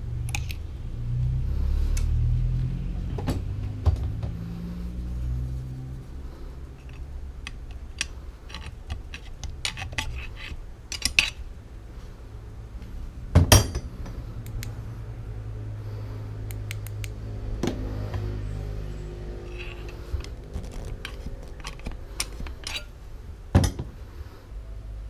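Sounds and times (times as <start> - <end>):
steady low hum: 0.0 - 25.0
metal parts and tools clinking: 6.8 - 11.5, 13.5 - 13.9, 19.4 - 23.0.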